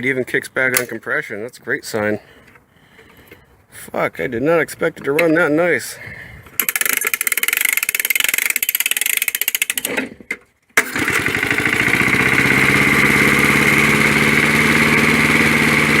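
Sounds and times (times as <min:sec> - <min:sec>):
small four-stroke engine running: 0:06.6 - 0:10.2, 0:10.8 - 0:16.0.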